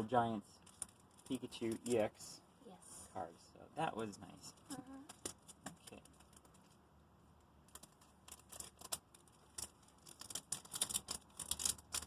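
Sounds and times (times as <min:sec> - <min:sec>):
foil wrapper crinkling: 0:07.7 - 0:12.0.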